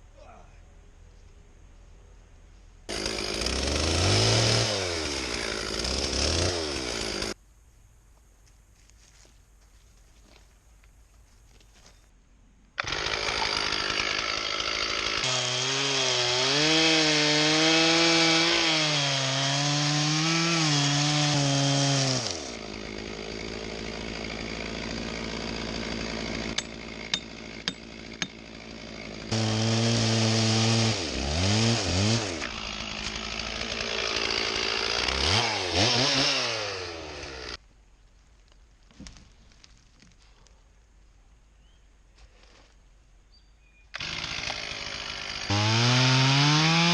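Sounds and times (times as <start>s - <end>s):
chainsaw cutting into a log: 2.9s - 7.4s, 12.8s - 37.6s, 44.0s - 46.9s
chainsaw idling with ticks: 2.9s - 7.4s, 12.8s - 15.3s, 22.5s - 30.0s, 32.4s - 36.1s, 44.0s - 46.9s.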